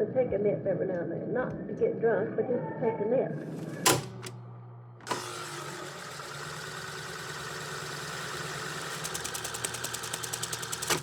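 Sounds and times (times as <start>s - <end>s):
machine running with hum: 3.3s - 11.0s
machine switch click: 3.8s - 4.4s.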